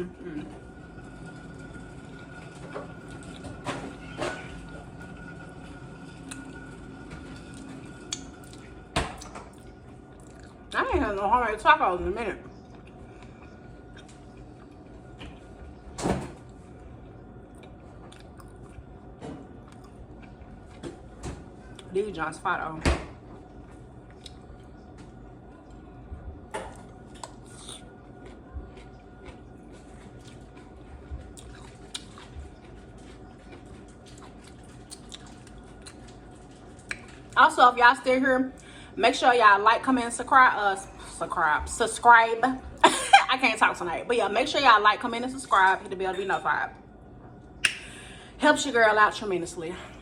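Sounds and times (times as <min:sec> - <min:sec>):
close chewing: 0:27.2 - 0:37.3.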